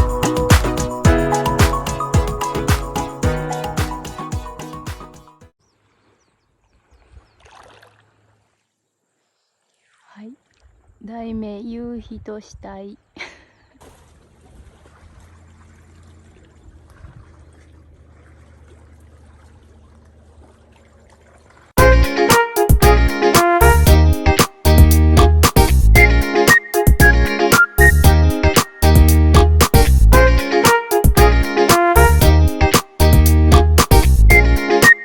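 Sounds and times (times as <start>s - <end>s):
upbeat music with plucked guitar: 0.0s - 5.5s, 21.8s - 35.0s
water trickling and lapping: 5.6s - 11.6s, 13.0s - 21.8s.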